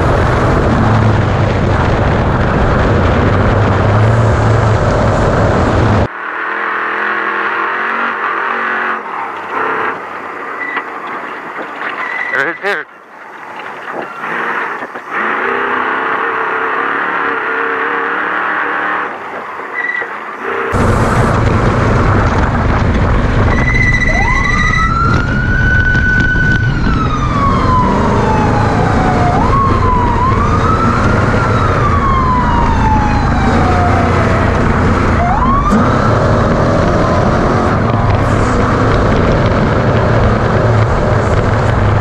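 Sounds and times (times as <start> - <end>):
truck engine running hard: 0.0 - 11.2, 14.2 - 42.0
siren winding up: 23.5 - 37.8.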